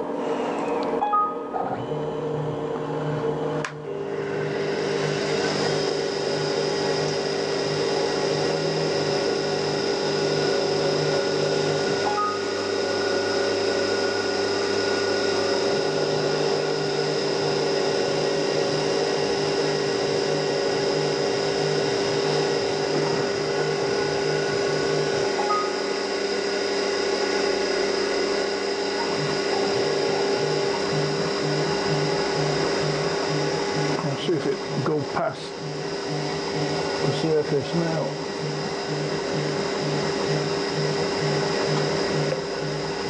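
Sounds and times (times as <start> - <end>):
spindle motor high whine: 0.0 - 43.0
low pulsing hum: 28.8 - 43.0.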